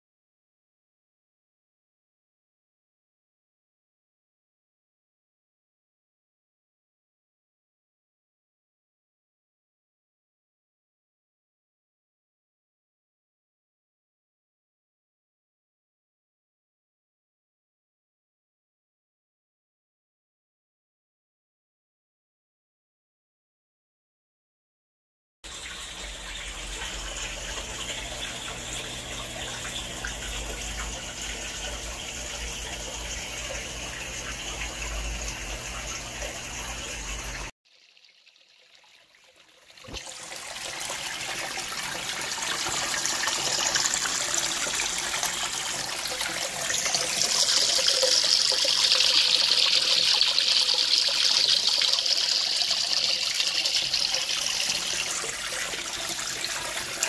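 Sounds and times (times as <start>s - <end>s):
filter low hum: 25.5s - 37.5s
water flow rushing trickle: 25.5s - 57.0s.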